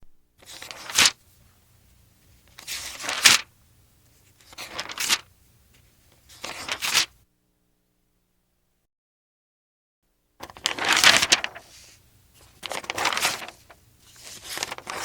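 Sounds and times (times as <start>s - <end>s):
paper pages turning: 0.4s - 1.2s, 2.5s - 3.5s, 4.3s - 5.3s, 6.2s - 7.1s, 10.4s - 15.0s.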